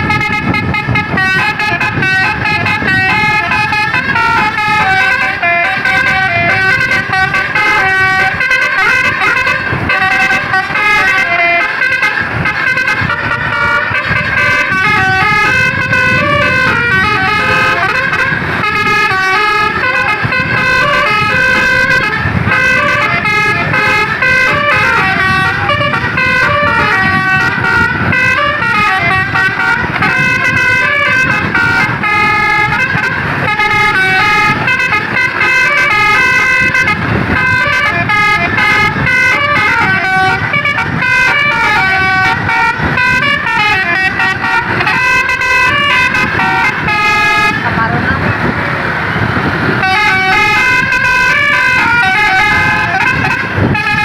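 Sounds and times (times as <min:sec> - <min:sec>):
bus air horn playing a tune: 0:00.0 - 0:54.0
steady low rumble: 0:00.0 - 0:54.0.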